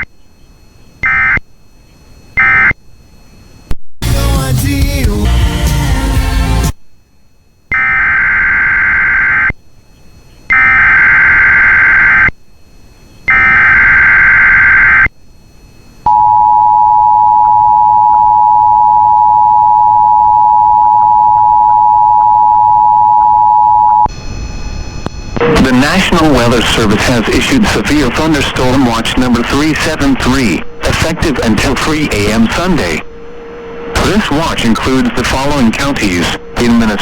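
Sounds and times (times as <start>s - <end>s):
digital data tone bursts: 22.6s - 37.0s
two-tone attention signal: 25.4s - 26.8s.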